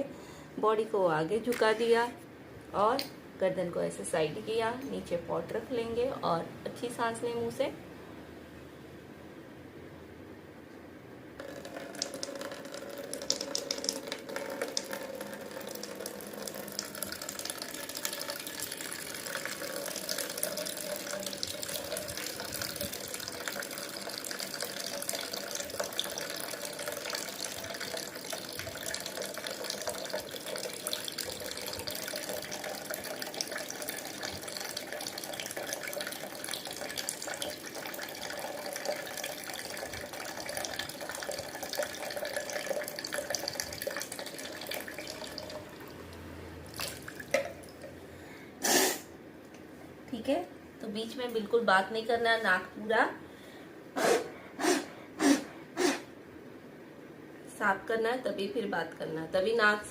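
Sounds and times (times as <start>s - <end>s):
water pouring and splashing: 11.4s - 46.0s, 46.7s - 47.9s.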